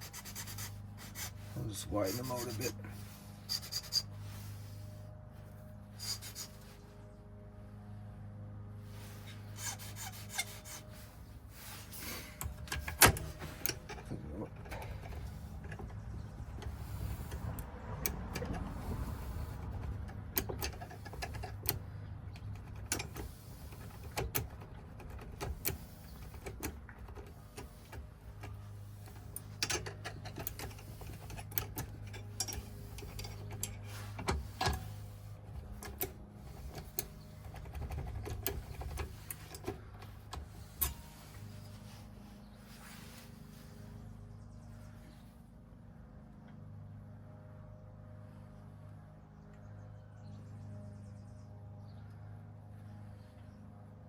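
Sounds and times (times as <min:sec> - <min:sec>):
metal filing scraping: 0:00.0 - 0:04.8, 0:06.0 - 0:06.7, 0:09.1 - 0:42.1
steady low hum: 0:00.0 - 0:54.0.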